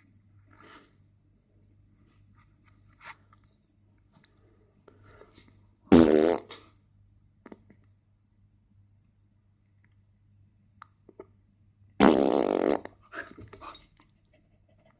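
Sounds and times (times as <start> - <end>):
loud fart sound: 5.9 - 6.6, 12.0 - 13.0.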